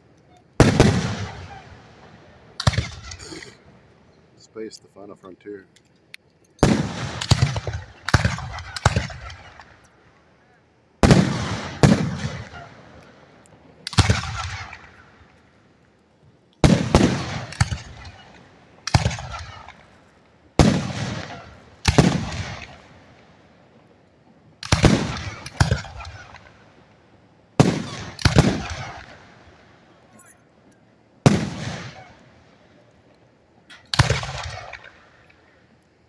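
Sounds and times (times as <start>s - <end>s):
firework shells booming: 0.6s - 4.0s, 6.6s - 10.0s, 11.0s - 15.4s, 16.6s - 20.0s, 20.6s - 23.4s, 24.6s - 26.8s, 27.6s - 29.7s, 31.2s - 32.5s, 33.7s - 35.4s.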